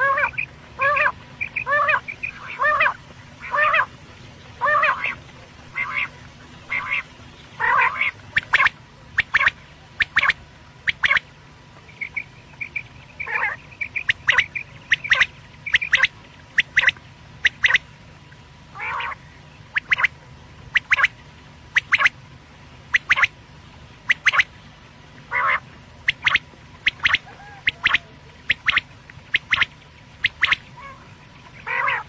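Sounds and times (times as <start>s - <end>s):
quail raspy low calls: 0.0s - 3.9s, 4.5s - 11.2s, 12.0s - 17.8s, 18.8s - 19.2s, 24.1s - 24.5s, 25.3s - 32.0s
quail short high calls: 0.0s - 3.9s, 4.6s - 6.1s, 12.0s - 17.8s, 25.3s - 28.8s, 29.4s - 32.0s.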